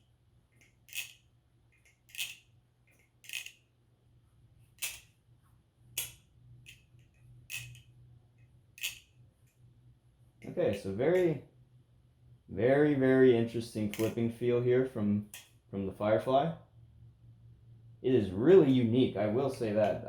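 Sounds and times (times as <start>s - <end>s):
bottle opener handles clacking: 0.9s - 1.2s, 2.1s - 2.4s, 3.2s - 3.5s, 7.5s - 7.8s, 8.8s - 9.0s, 13.9s - 14.2s.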